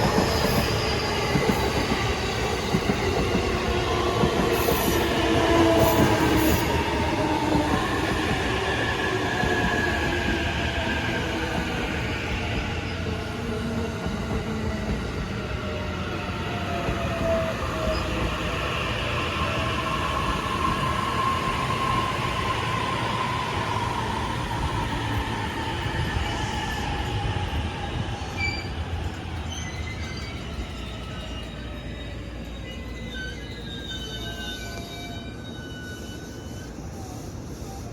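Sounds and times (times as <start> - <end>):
short high squeals: 29.4 - 37.9.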